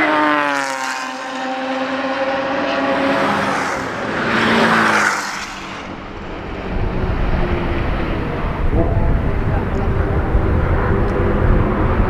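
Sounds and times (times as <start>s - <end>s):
car passing by: 0.0s - 12.0s
sports car engine and exhaust: 4.9s - 12.0s.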